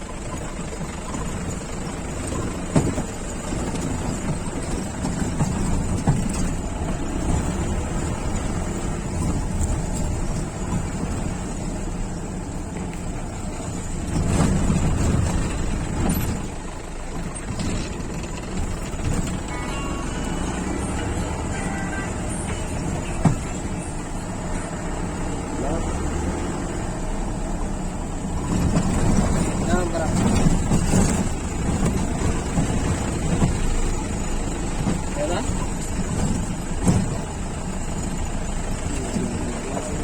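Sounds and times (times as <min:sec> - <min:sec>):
knocks and rattles from bumps: 0:00.0 - 0:40.0
vehicle engine and road rumble: 0:00.0 - 0:40.0.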